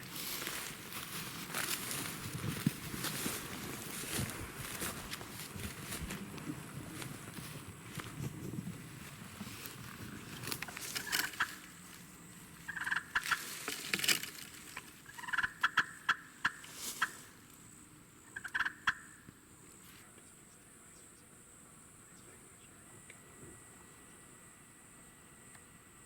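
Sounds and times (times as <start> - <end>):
wild turkey gobbling: 10.6 - 11.8, 12.6 - 13.6, 15.0 - 17.3, 18.2 - 19.2.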